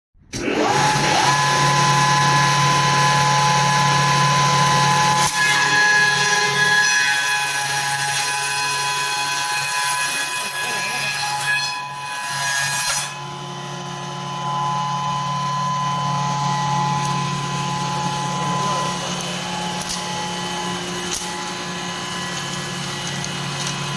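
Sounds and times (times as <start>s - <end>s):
cutter milling wood: 0.3s - 23.9s
machine motor humming: 12.7s - 23.9s.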